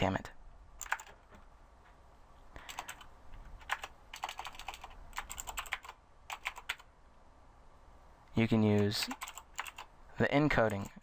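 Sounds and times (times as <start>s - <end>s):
typing on computer keyboard: 0.8s - 1.2s, 2.7s - 6.9s, 9.1s - 9.9s.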